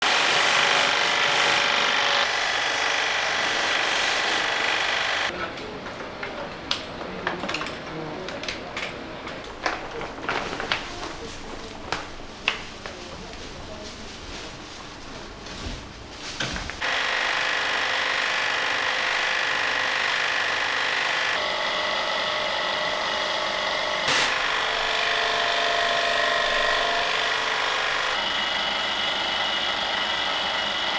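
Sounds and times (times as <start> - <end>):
pressure washer buzzing hiss: 0.0 - 5.3, 16.8 - 30.9.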